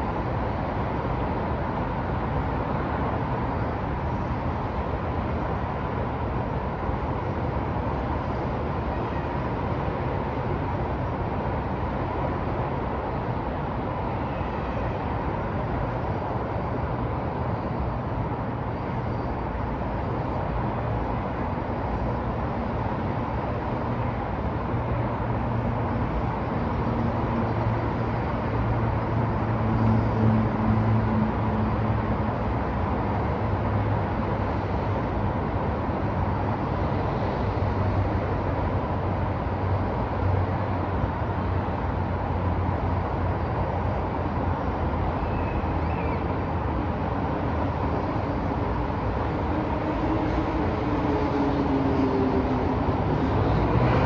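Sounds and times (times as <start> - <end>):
road noise: 0.0 - 54.0
vehicle engines humming: 13.0 - 54.0.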